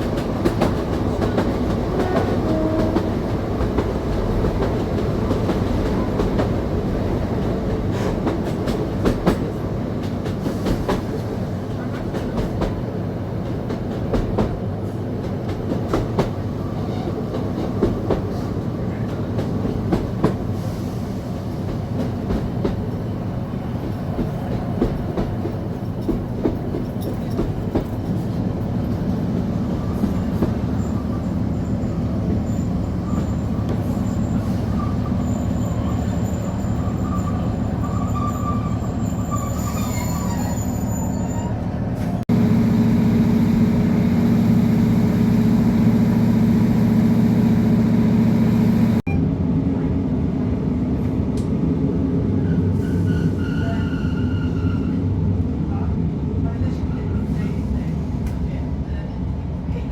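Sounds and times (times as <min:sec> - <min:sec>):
high-pitched wheel squeal: 0:30.8 - 0:41.8, 0:52.4 - 0:55.0
diesel engine hum: 0:42.3 - 0:49.1.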